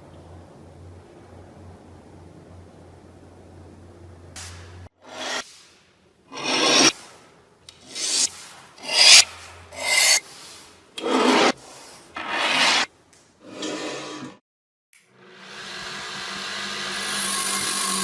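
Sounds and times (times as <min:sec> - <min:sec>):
file scraping a knife: 0:05.1 - 0:05.4, 0:06.3 - 0:07.0, 0:07.7 - 0:10.3, 0:11.0 - 0:14.4.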